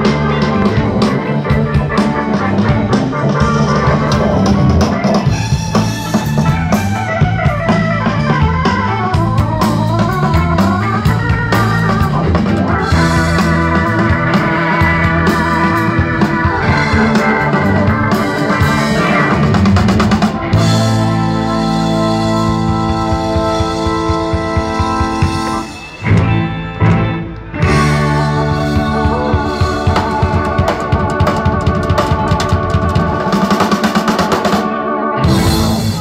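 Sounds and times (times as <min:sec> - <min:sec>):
gliding lead guitar line: 0:00.0 - 0:36.0
live rock band playing: 0:00.0 - 0:36.0.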